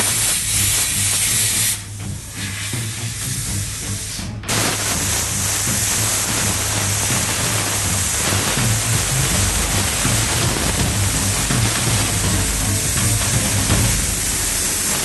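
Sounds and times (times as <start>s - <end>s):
loud hiss: 0.0s - 15.0s
low hum: 3.0s - 15.0s.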